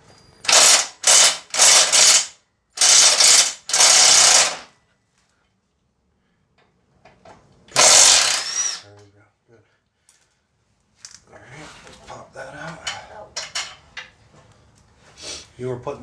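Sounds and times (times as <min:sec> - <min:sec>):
hand tool tightening bolt: 0:00.5 - 0:04.6, 0:07.7 - 0:08.8.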